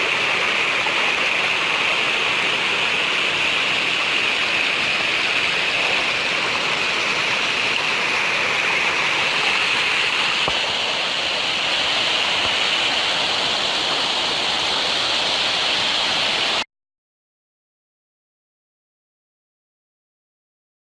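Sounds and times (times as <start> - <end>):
running water rushing: 0.0 - 16.7.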